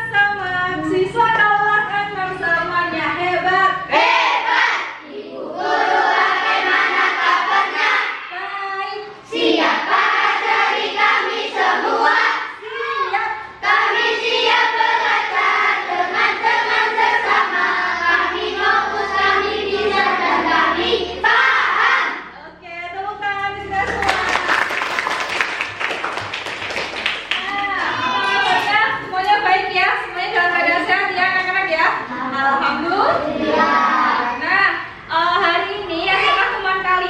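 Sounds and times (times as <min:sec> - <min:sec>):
children singing in chorus: 0:03.9 - 0:08.3, 0:09.3 - 0:22.2, 0:33.2 - 0:34.4.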